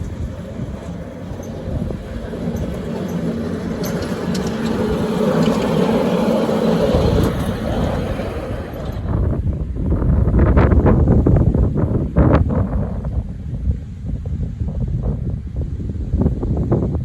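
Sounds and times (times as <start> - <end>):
miniature locomotive mechanical hum: 0.0 - 13.5.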